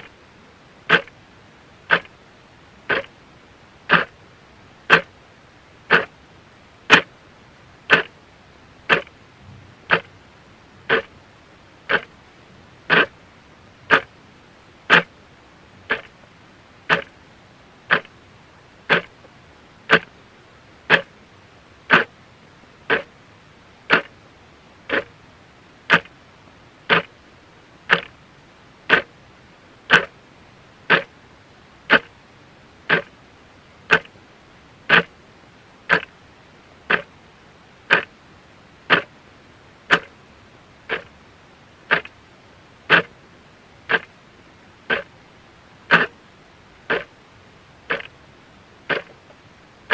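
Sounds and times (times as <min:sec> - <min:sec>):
clock ticking: 0:00.9 - 0:01.1, 0:01.9 - 0:02.1, 0:02.9 - 0:03.1, 0:03.9 - 0:04.1, 0:04.9 - 0:05.1, 0:05.9 - 0:06.1, 0:07.9 - 0:08.1, 0:08.9 - 0:09.1, 0:09.9 - 0:10.1, 0:10.9 - 0:11.1, 0:11.9 - 0:12.1, 0:12.9 - 0:13.1, 0:13.9 - 0:14.1, 0:14.9 - 0:15.1, 0:15.9 - 0:16.1, 0:16.9 - 0:17.1, 0:17.9 - 0:18.1, 0:18.9 - 0:19.2, 0:19.9 - 0:20.1, 0:20.9 - 0:21.1, 0:21.9 - 0:22.1, 0:22.9 - 0:23.1, 0:23.9 - 0:24.1, 0:24.9 - 0:25.1, 0:25.9 - 0:26.1, 0:26.9 - 0:27.1, 0:27.9 - 0:28.2, 0:28.9 - 0:29.1, 0:29.9 - 0:30.1, 0:30.9 - 0:31.1, 0:31.9 - 0:32.1, 0:32.9 - 0:33.1, 0:33.9 - 0:34.2, 0:34.9 - 0:35.1, 0:35.9 - 0:36.1, 0:36.9 - 0:37.1, 0:37.9 - 0:38.1, 0:38.9 - 0:39.1, 0:39.9 - 0:40.1, 0:40.9 - 0:41.1, 0:41.9 - 0:42.1, 0:42.9 - 0:43.2, 0:43.9 - 0:44.1, 0:44.9 - 0:45.1, 0:45.9 - 0:46.1, 0:46.9 - 0:47.1, 0:47.9 - 0:48.1, 0:48.9 - 0:49.2.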